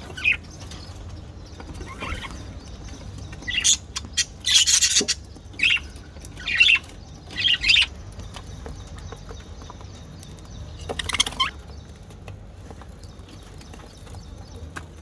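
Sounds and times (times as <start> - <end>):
budgerigar chirping: 3.4 - 7.9.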